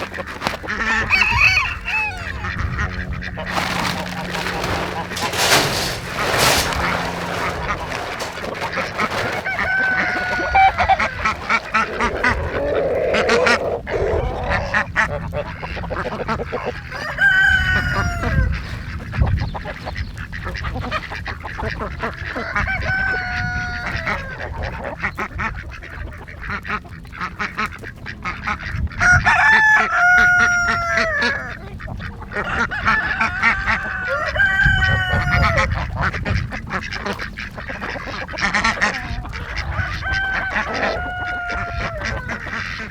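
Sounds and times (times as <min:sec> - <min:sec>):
small clicks and rustles: 0:00.0 - 0:02.4, 0:03.4 - 0:12.4
waterfowl honking: 0:00.0 - 0:18.5, 0:26.4 - 0:42.9.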